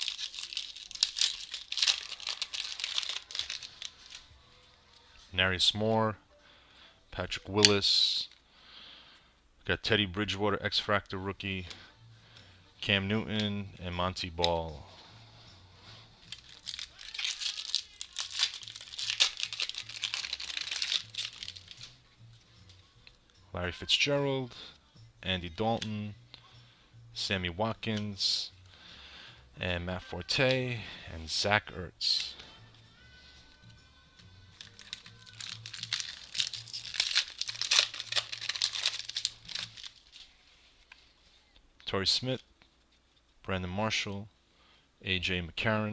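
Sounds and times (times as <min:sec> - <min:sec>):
foil wrapper tearing and crinkling: 0:00.0 - 0:04.3, 0:16.3 - 0:21.9, 0:34.5 - 0:40.4
faint background music: 0:00.0 - 0:45.9.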